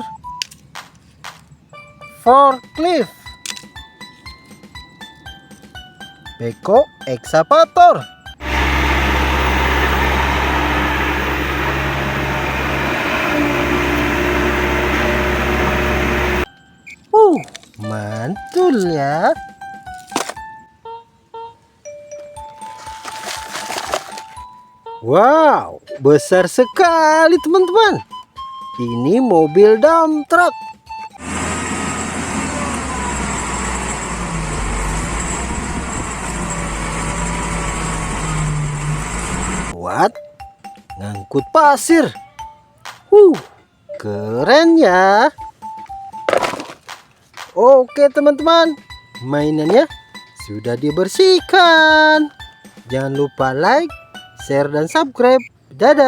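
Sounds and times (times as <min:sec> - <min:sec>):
machine hum: 0:08.4 - 0:16.5, 0:31.2 - 0:39.8
truck engine running: 0:08.4 - 0:16.5, 0:31.1 - 0:39.8.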